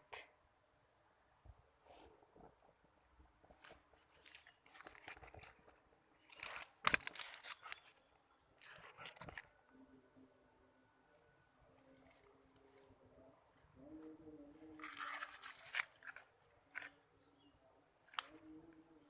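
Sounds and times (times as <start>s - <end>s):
rustling and crackling handling: 3.4s - 8.0s, 8.6s - 9.6s, 14.7s - 17.1s.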